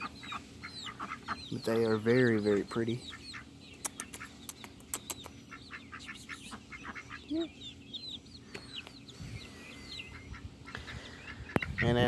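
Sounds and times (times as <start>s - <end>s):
chicks peeping and chirping: 0.0s - 12.0s
low cluck: 3.0s - 7.5s, 10.1s - 12.0s
sharp clicks: 3.8s - 5.4s.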